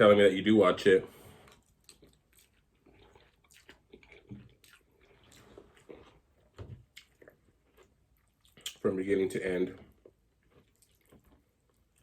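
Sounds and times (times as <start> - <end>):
person chewing: 1.3 - 8.8, 9.9 - 12.0.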